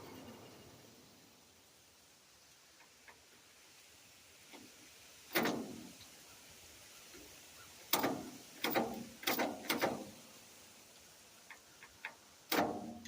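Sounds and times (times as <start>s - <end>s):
sharp knocks: 7.9s - 10.1s.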